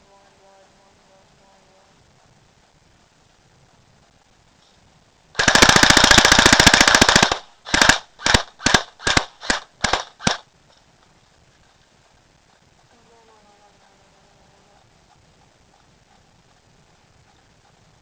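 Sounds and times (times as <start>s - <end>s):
airsoft gun firing full auto: 5.4s - 10.5s.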